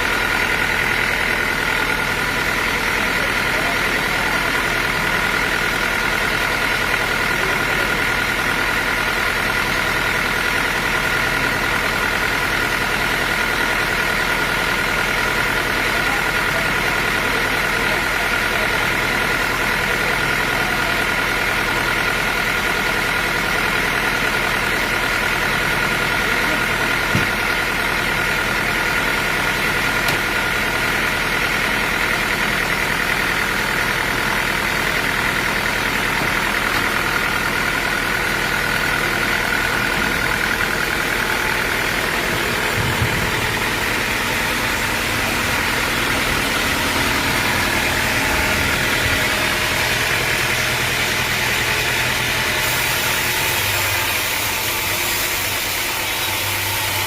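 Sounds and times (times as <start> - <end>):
sawmill machinery running: 0.0 - 57.0
high machine whine: 29.6 - 57.0
low machine hum: 33.8 - 54.4.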